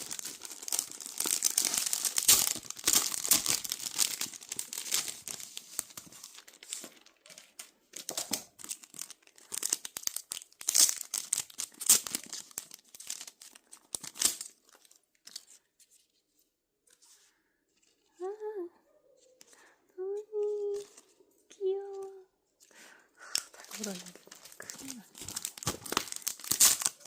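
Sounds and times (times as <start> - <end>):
wrapping torn and crinkled: 0.0 - 16.0, 20.3 - 21.2, 21.8 - 27.0.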